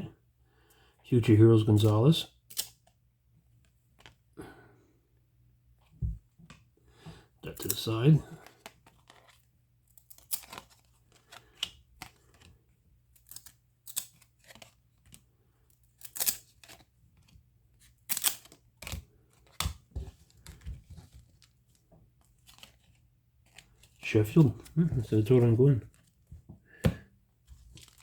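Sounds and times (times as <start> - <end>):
cards sliding and rustling: 7.5 - 15.2, 15.9 - 28.0.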